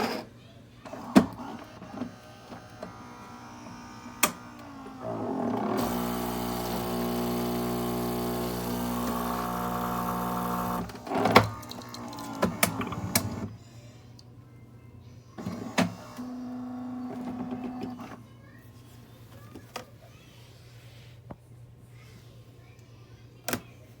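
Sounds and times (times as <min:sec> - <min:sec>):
espresso machine motor humming: 0:01.6 - 0:13.5
machine clicks and knocks: 0:10.4 - 0:13.5.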